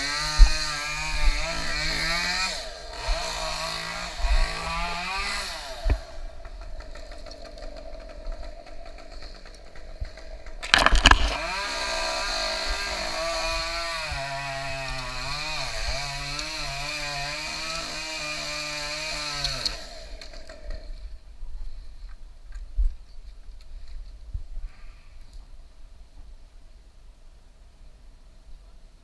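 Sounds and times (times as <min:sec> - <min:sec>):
chainsaw cutting a tree: 0:00.0 - 0:08.0, 0:10.0 - 0:20.9.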